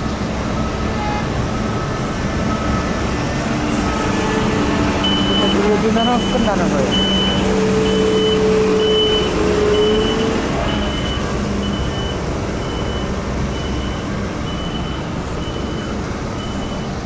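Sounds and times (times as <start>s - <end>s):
diesel engines running: 0.0s - 17.0s
reversing alarm beeping: 3.8s - 17.0s.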